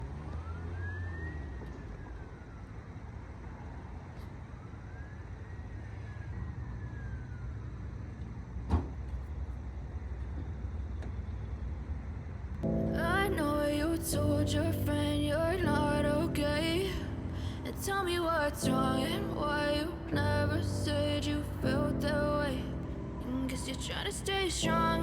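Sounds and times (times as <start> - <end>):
faint siren wailing: 0.0 - 8.6, 15.5 - 25.0.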